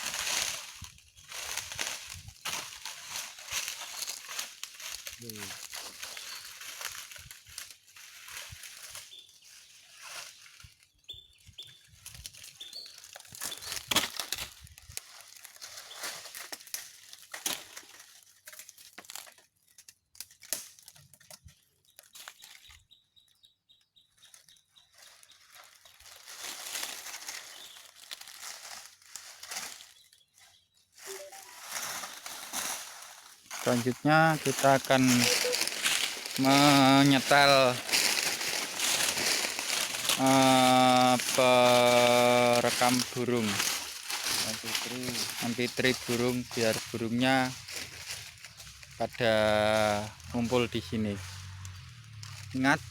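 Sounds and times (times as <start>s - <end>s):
rustling and crinkling: 0.0s - 22.9s, 24.1s - 52.9s
short high chirps: 31.1s - 31.6s, 35.0s - 36.0s.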